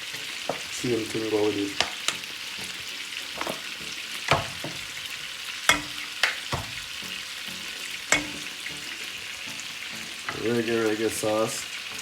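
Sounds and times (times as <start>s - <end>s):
food sizzling in butter: 0.0s - 12.0s
spoon clinking against pan: 3.3s - 9.2s.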